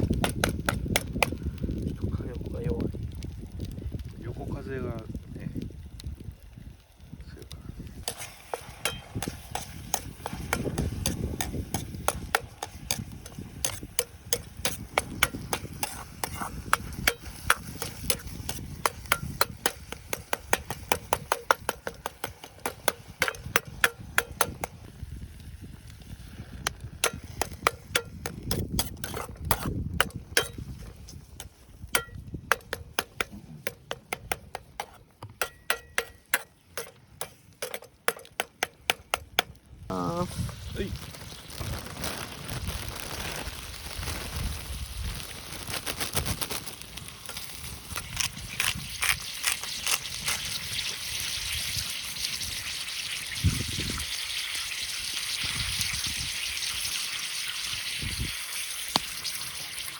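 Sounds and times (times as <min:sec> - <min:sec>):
wind rumbling on microphone: 0:00.0 - 0:34.8, 0:39.1 - 0:59.9.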